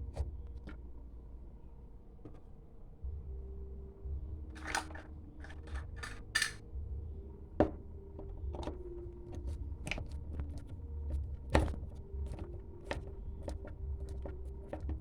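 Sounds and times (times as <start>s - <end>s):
low steady hum: 0.0s - 15.0s
hard parts clicking and rattling: 4.5s - 6.6s.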